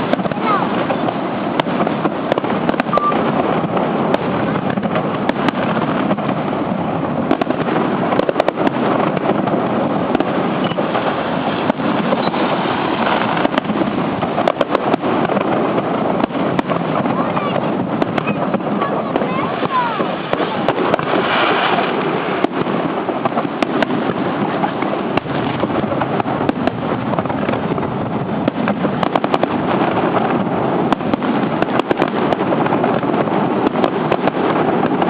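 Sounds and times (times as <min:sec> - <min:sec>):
fireworks bursting and crackling: 0:00.0 - 0:35.0.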